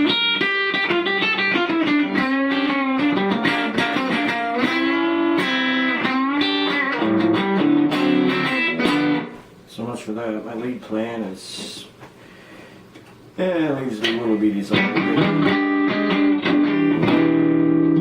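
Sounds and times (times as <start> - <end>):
electric guitar lead with bends: 0.0 - 9.4, 14.7 - 18.0.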